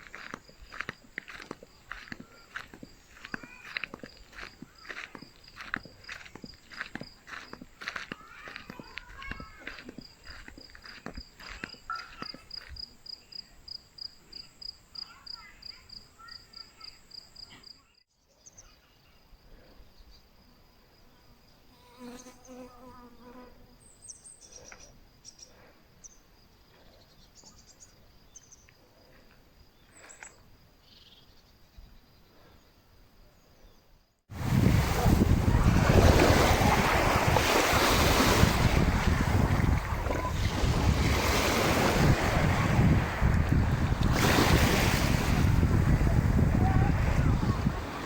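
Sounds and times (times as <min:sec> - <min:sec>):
footsteps: 0:00.0 - 0:12.8
cricket chirping: 0:00.0 - 0:34.2.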